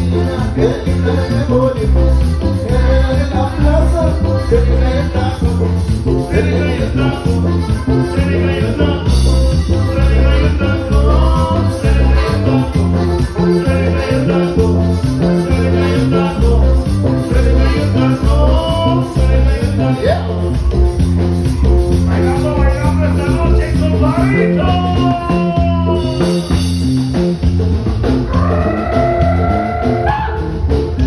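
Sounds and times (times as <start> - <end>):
saxophone melody: 0.0 - 22.6
band playing dance music: 0.0 - 31.0.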